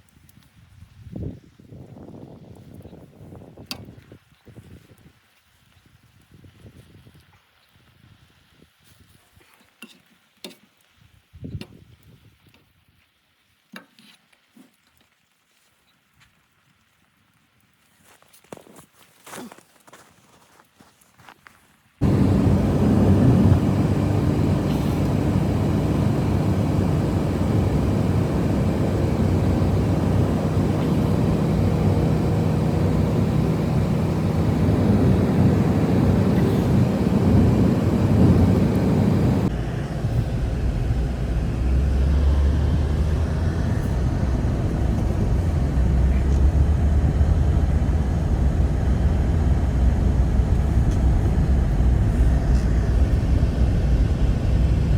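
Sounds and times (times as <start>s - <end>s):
strong blizzard wind rushing: 22.0s - 54.9s.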